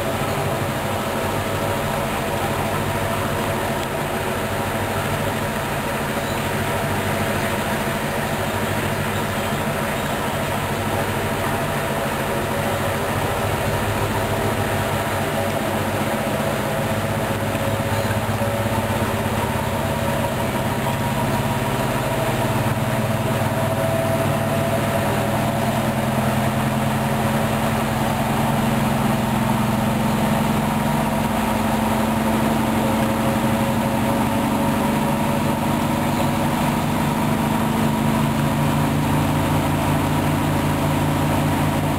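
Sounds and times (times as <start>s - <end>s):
washing machine drum spinning: 0.0s - 41.9s.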